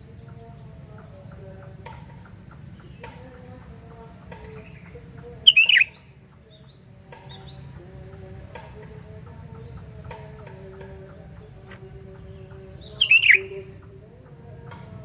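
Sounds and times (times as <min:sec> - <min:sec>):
faint high chirps: 0:04.5 - 0:07.9, 0:10.5 - 0:13.9
bird call falling in pitch: 0:13.0 - 0:13.6.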